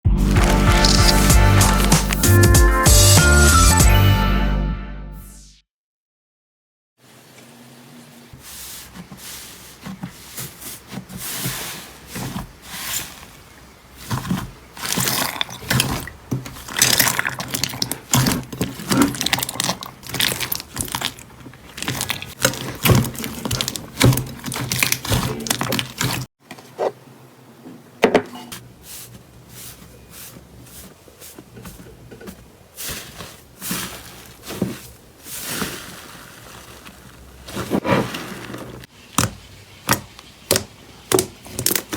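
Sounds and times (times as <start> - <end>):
slime squelching and popping: 0.3 - 2.3, 14.1 - 26.3, 39.2 - 41.9.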